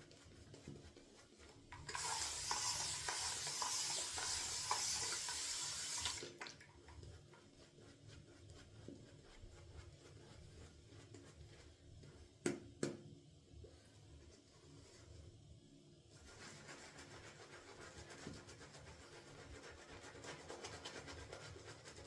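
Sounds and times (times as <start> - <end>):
tap running: 1.8 - 6.3
shaving brush rubbing lather: 1.9 - 6.2, 7.2 - 12.2, 16.2 - 22.0.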